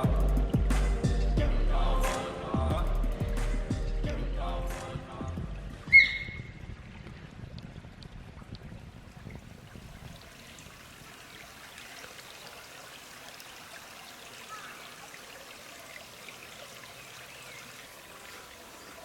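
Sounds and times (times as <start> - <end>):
stream trickling: 5.4 - 19.0.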